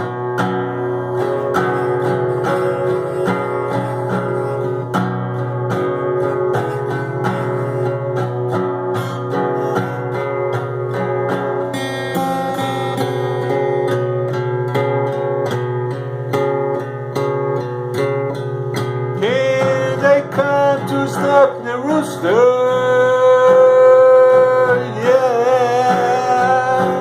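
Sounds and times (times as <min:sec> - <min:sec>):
acoustic guitar strumming chords: 0:00.0 - 0:27.0
person singing: 0:19.2 - 0:27.0.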